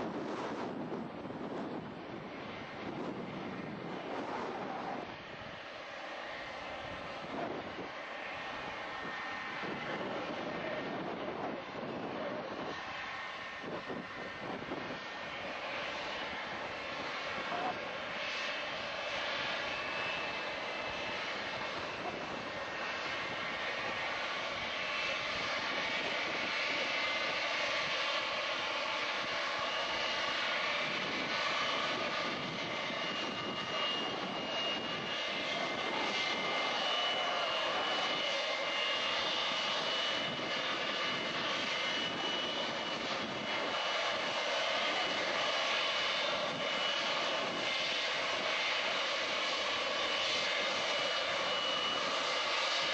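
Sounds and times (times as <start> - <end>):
jet engines running with whine: 0.0 - 52.9.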